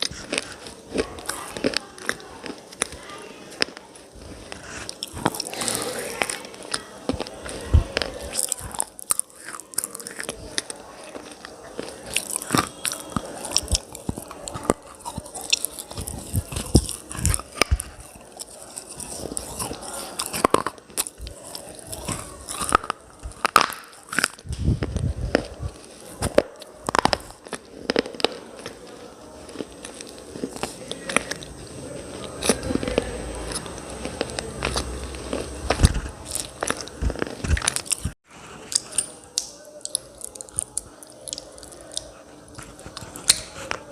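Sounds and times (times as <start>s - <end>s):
crunching and chewing hard pieces: 0.0s - 43.9s.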